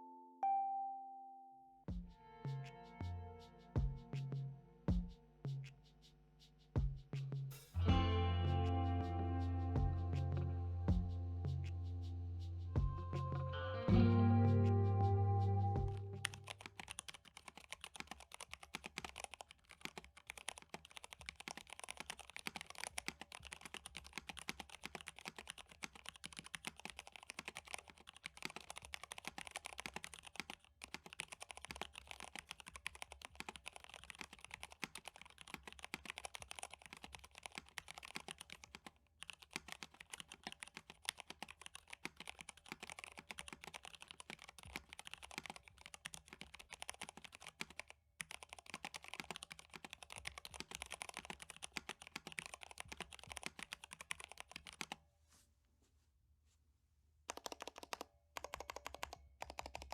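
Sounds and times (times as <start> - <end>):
typing on mechanical keyboard: 15.9 - 55.0, 57.3 - 59.9.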